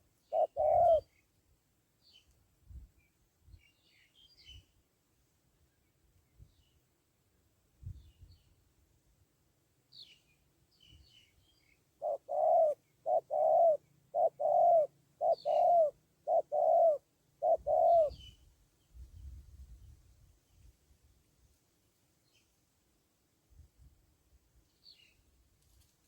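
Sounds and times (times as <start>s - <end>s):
dove cooing: 0.0s - 1.1s, 12.0s - 18.3s
small birds chirping: 0.0s - 1.4s, 9.9s - 19.0s.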